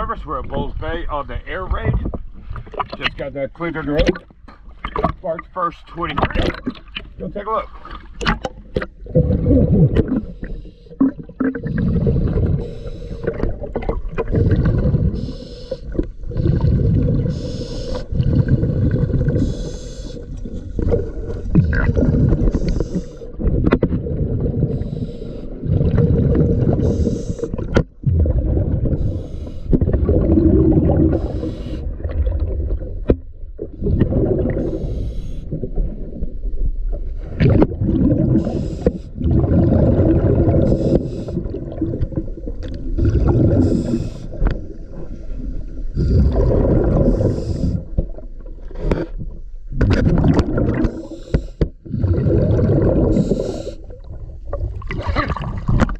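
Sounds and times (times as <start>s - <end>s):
exhaled bubbles gurgling underwater: 3.9s - 55.9s
regulator hissing breaths: 12.6s - 13.3s, 15.2s - 15.9s, 17.3s - 18.1s, 19.4s - 20.3s, 22.5s - 23.4s, 24.7s - 25.6s, 26.8s - 27.6s, 29.0s - 29.7s, 31.2s - 31.8s, 34.7s - 35.5s, 38.4s - 39.2s, 40.7s - 41.4s, 43.6s - 44.4s, 47.1s - 47.9s, 50.8s - 51.6s, 53.1s - 53.9s.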